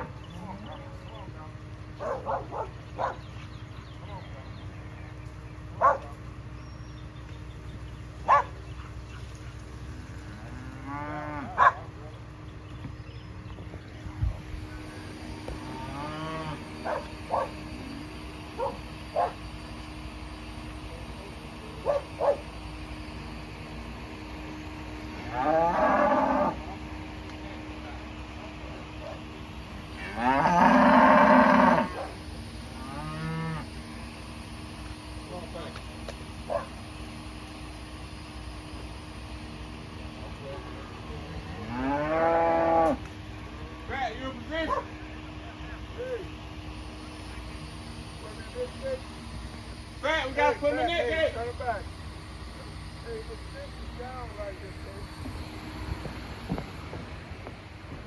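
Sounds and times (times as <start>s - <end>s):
cattle mooing: 0.0s - 1.2s, 9.9s - 11.9s, 15.5s - 18.0s, 25.1s - 26.9s, 29.9s - 33.8s, 41.2s - 43.1s.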